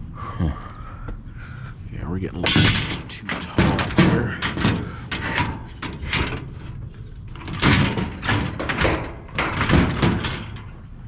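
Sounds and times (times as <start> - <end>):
scrap metal clattering bangs: 2.4 - 11.0.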